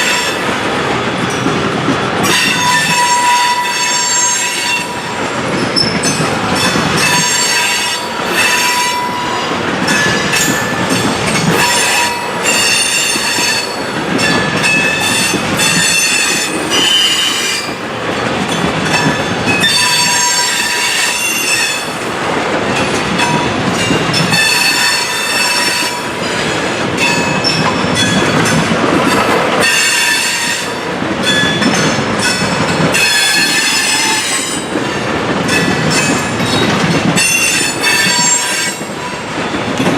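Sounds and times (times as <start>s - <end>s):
rumble of train wheels on rail: 0.0s - 39.9s
steel wheels squealing: 2.2s - 17.8s, 18.5s - 22.0s, 23.2s - 34.7s, 35.5s - 39.2s.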